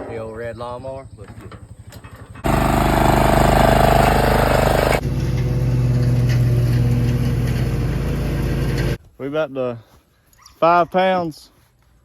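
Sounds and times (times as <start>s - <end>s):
lawn mower engine running: 2.0s - 9.0s.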